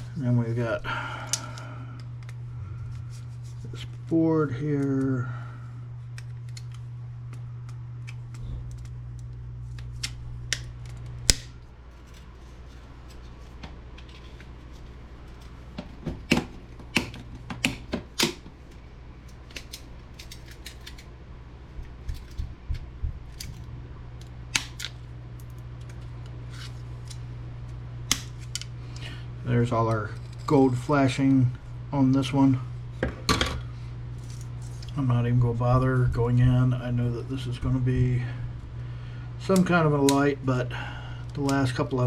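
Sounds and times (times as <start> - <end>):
steady low hum: 0.0 - 42.0
clicks and snaps of plastic parts: 19.2 - 21.1.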